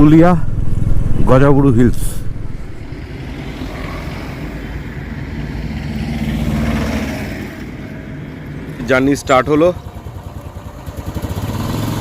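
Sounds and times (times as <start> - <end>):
road noise: 0.0 - 12.0
motorcycle engine running: 5.7 - 12.0.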